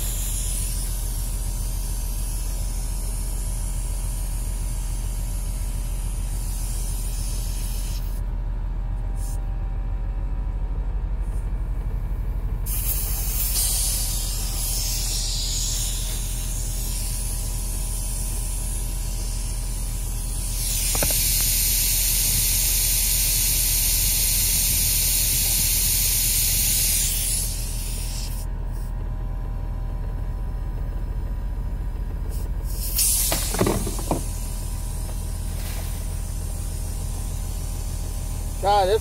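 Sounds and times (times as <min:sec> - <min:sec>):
compressed air hissing: 0:00.0 - 0:08.2, 0:12.6 - 0:28.9, 0:32.3 - 0:39.0
idling car and compressor hum: 0:00.0 - 0:39.0.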